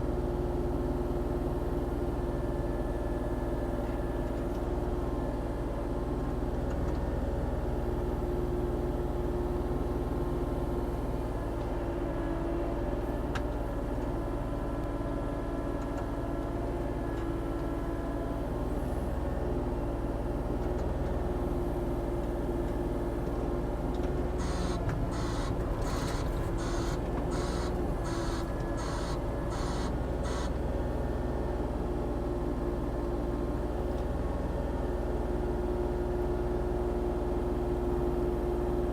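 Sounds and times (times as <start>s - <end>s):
excavator diesel engine running: 0.0s - 38.9s
short harsh pulses: 24.4s - 30.5s.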